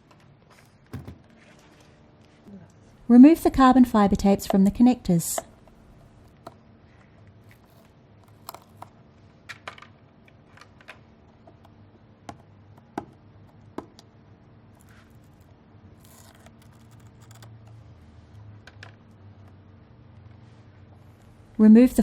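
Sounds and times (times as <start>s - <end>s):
low steady hum: 0.0s - 22.0s
tape peeling: 14.8s - 17.8s.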